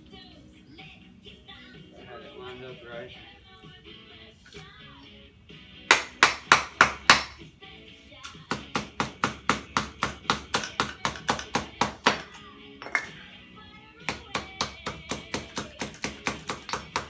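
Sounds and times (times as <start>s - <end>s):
faint radio music and talk: 0.0s - 17.0s
hammer striking metal: 5.9s - 7.4s.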